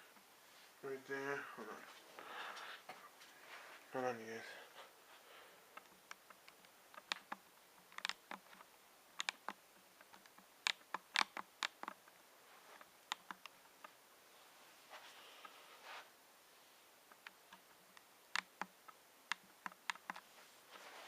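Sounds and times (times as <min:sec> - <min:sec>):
cable and packaging clicks and taps: 0:05.8 - 0:12.0, 0:17.1 - 0:20.2.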